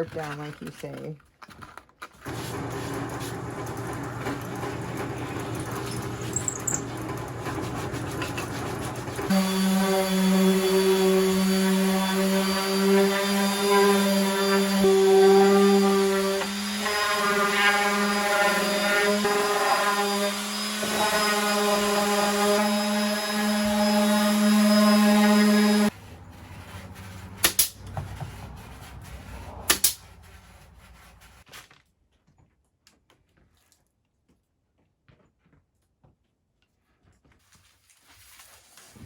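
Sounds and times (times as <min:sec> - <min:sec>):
power tool motor humming: 0:09.0 - 0:25.9.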